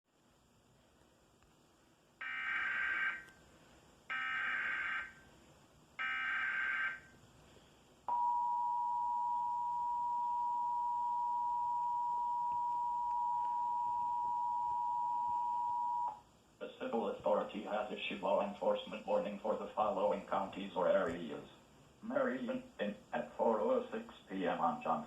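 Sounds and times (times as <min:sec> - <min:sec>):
two-tone attention signal: 0:08.1 - 0:16.2.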